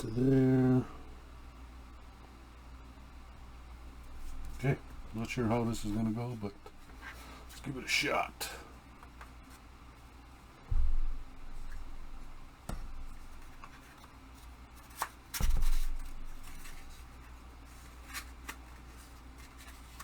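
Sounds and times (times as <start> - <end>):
dull knocks: 10.7 - 13.8.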